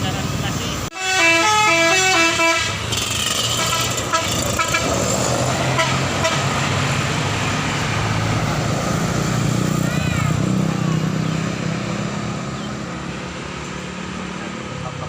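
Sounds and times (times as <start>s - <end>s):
bus engine running: 0.0s - 15.0s
bus musical horn: 0.9s - 6.8s.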